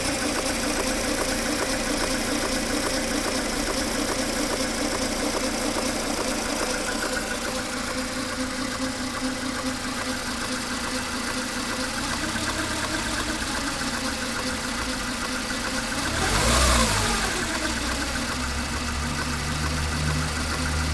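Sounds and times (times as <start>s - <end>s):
rattling car engine idling: 0.0s - 20.9s
engine revving: 11.2s - 20.9s.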